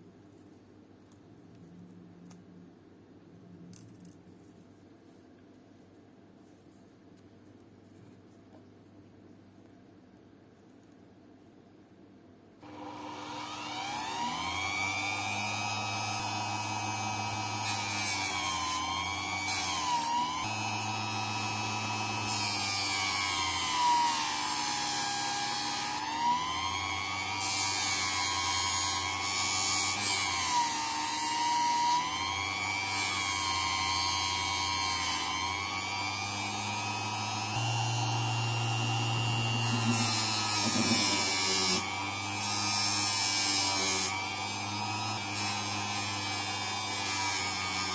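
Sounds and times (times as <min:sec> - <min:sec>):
small electric motor whining: 0:12.6 - 0:47.9.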